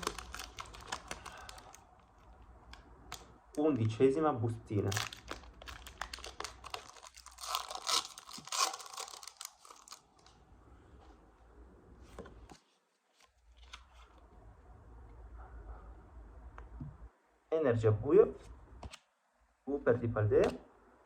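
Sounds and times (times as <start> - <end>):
foil wrapper tearing and crinkling: 0.0 - 1.8, 4.9 - 10.3.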